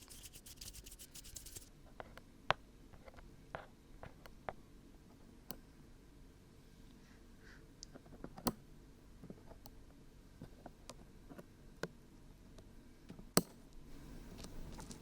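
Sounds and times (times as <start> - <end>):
crackling handling noise on microphone: 0.0 - 2.2, 14.2 - 15.0.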